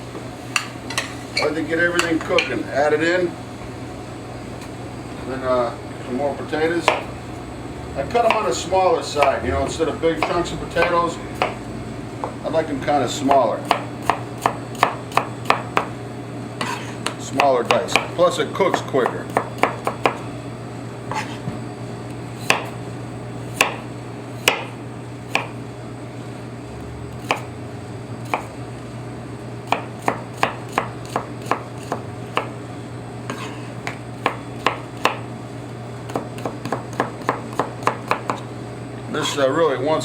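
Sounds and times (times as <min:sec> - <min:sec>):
steady low hum: 0:00.0 - 0:40.0
knife chopping on cutting board: 0:06.8 - 0:07.1, 0:08.2 - 0:08.6, 0:09.2 - 0:09.4, 0:10.2 - 0:11.6, 0:13.2 - 0:15.9, 0:16.6 - 0:20.2, 0:21.1 - 0:21.6, 0:22.4 - 0:22.8, 0:23.5 - 0:25.6, 0:27.2 - 0:27.5, 0:28.2 - 0:28.5, 0:29.6 - 0:32.6, 0:33.3 - 0:35.3, 0:36.1 - 0:38.5.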